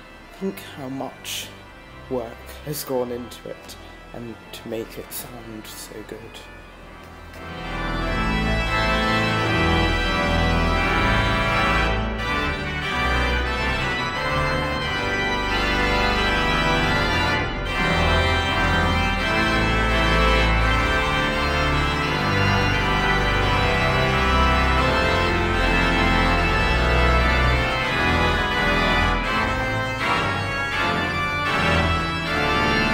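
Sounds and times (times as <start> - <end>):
organ chords: 0.0 - 32.9
person talking: 0.4 - 6.5.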